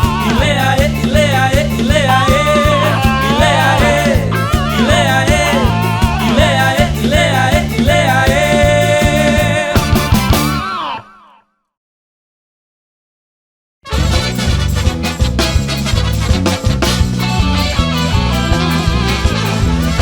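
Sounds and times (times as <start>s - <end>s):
upbeat carnival band music: 0.0s - 10.8s, 13.8s - 20.0s.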